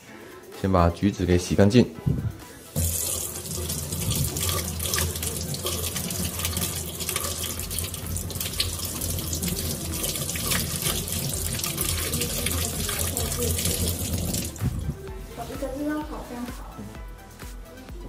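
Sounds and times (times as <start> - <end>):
tap water running into sink: 2.8 - 15.0
water splashing: 2.8 - 15.0.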